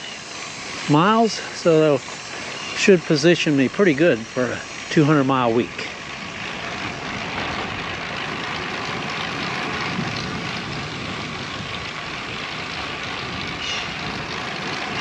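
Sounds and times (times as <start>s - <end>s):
road and tyre noise: 0.0s - 15.0s
wind on microphone: 6.3s - 15.0s.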